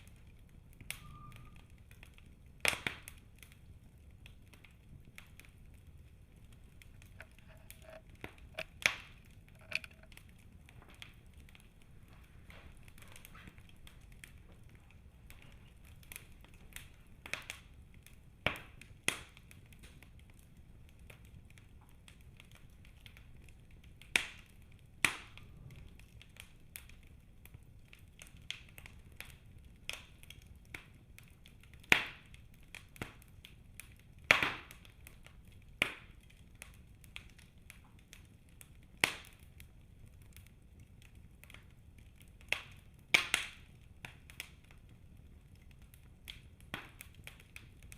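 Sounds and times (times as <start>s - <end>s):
wood fire crackling and popping: 0.0s - 47.9s.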